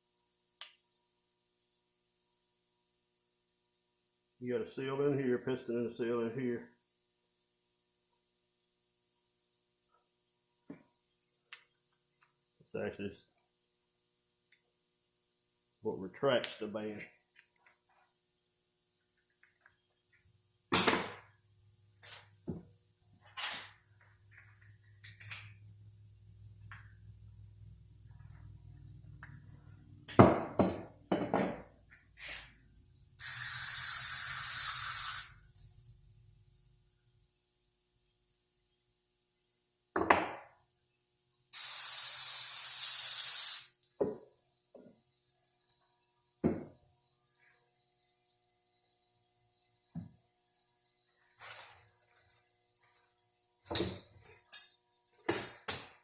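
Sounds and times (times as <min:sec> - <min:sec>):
hiss of spray: 0:33.2 - 0:35.4, 0:41.6 - 0:43.8.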